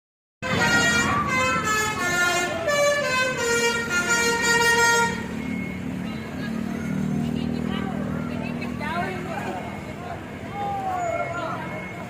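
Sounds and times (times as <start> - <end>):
musical air horn melody: 0.4 - 5.3.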